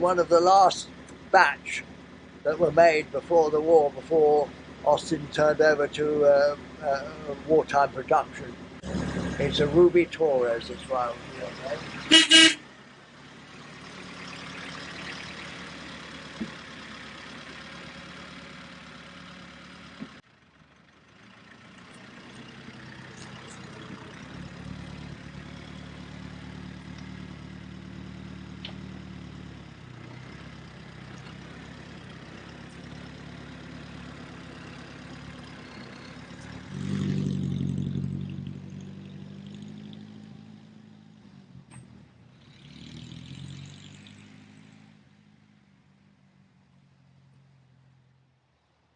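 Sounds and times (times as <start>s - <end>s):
car engine running: 0.0s - 44.8s.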